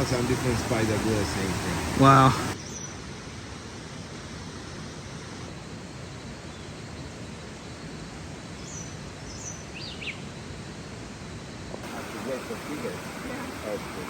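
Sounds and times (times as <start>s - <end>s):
rushing forest ambience: 0.0s - 14.0s
bird chirping: 8.6s - 10.2s.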